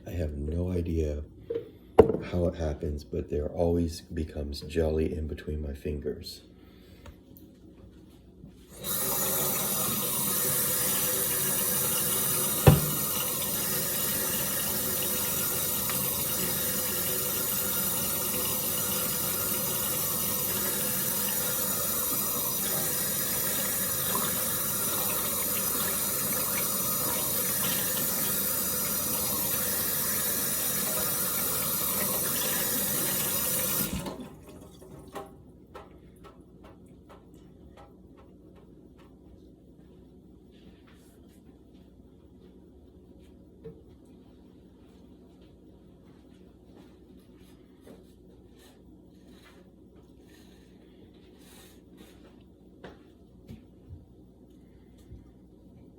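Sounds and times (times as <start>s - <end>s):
water tap running into sink: 8.7s - 35.3s
sharp knock: 12.7s - 13.0s.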